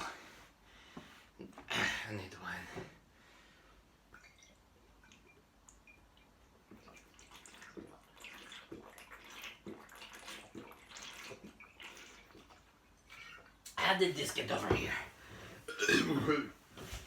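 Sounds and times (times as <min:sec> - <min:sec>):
water splashing in sink: 0:06.7 - 0:13.5.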